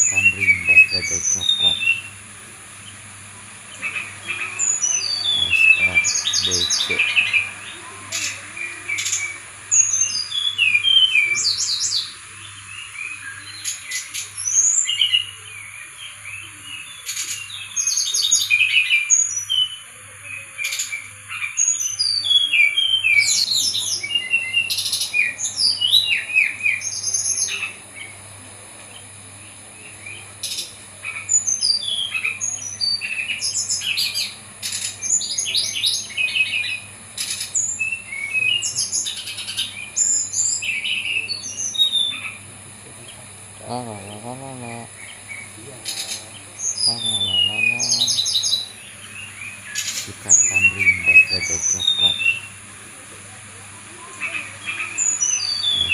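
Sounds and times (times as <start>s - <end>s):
bird singing high chirps: 0.0s - 2.1s, 3.8s - 12.1s, 46.0s - 52.6s, 54.6s - 55.9s.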